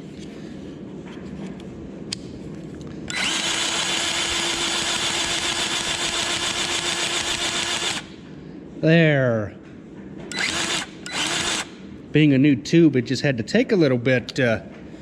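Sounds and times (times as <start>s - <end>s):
grease gun pump motor: 3.1s - 8.1s, 10.3s - 11.8s.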